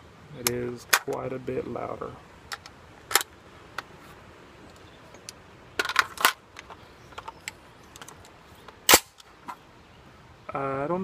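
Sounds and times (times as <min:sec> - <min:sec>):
suppressed rifle shots: 0:08.9 - 0:09.2.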